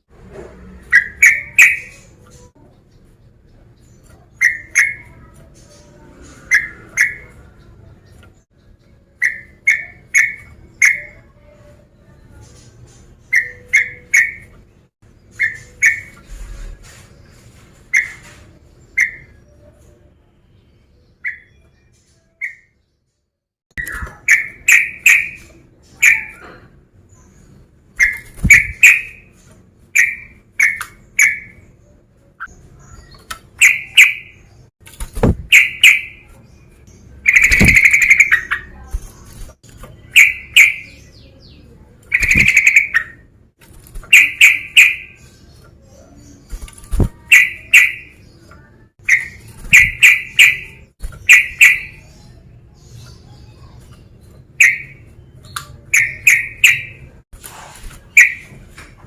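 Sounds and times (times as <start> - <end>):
bird singing bubbly notes: 37.0 - 38.8.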